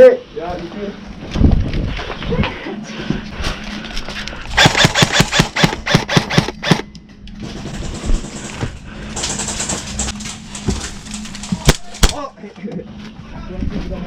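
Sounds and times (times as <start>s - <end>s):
airsoft gun rapid fire: 4.6s - 6.8s, 7.4s - 10.1s.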